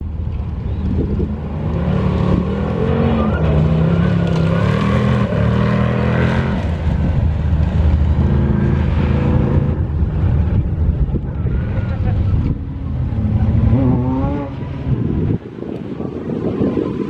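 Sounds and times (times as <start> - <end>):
car engine revving: 0.4 - 15.4.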